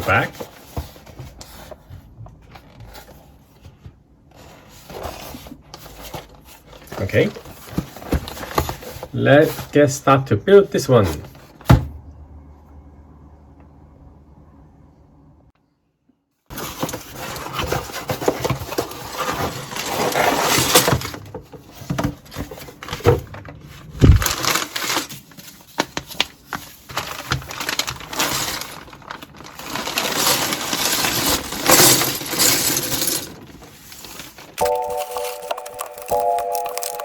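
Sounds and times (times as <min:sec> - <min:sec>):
plastic bags crinkling: 0:24.0 - 0:37.0
plastic bricks clattering and clicking: 0:34.6 - 0:37.0.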